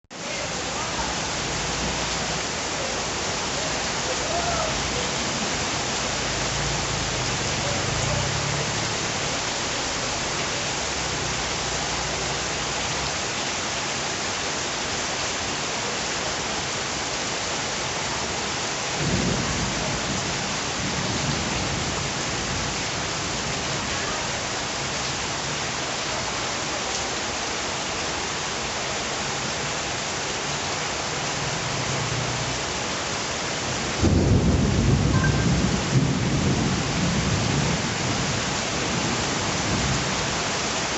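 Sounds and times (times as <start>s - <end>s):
heavy rain falling: 0.1s - 40.9s
rolls of thunder: 34.0s - 37.8s.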